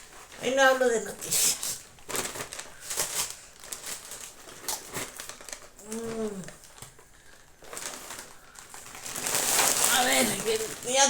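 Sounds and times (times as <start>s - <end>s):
packaging crinkling: 0.0s - 11.0s
person humming: 5.8s - 6.6s.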